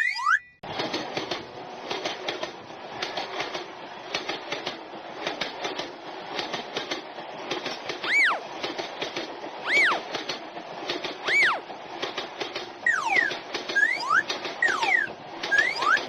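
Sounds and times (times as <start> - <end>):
rising and falling tone: 0.0 - 0.6, 9.6 - 10.0, 12.9 - 16.0
train wheels clattering on rails: 0.6 - 16.0.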